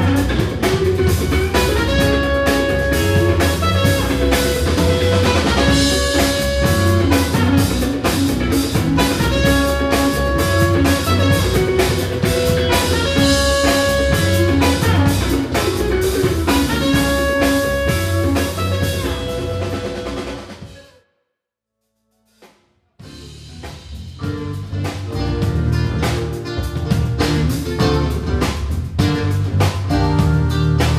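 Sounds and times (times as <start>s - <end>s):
live band music: 0.0s - 21.0s, 23.0s - 30.9s.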